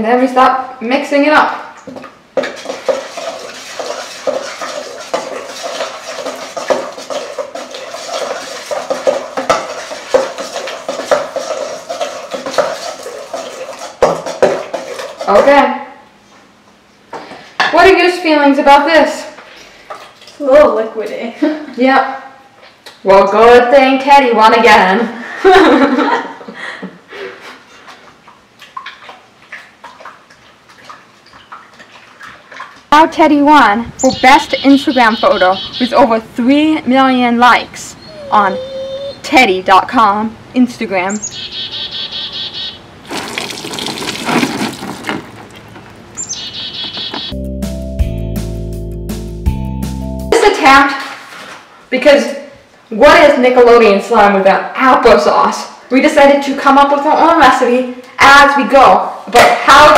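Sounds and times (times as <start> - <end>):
utensil stirring thick slime in bowl: 1.9 - 15.5
slime squelching: 43.0 - 45.8.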